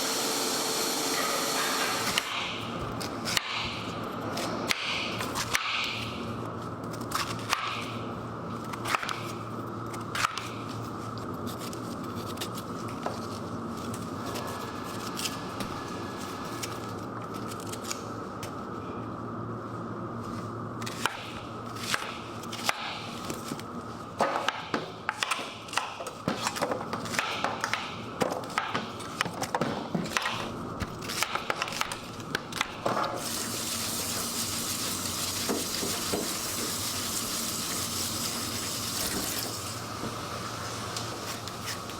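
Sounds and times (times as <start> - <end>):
machine humming: 0.0 - 2.8.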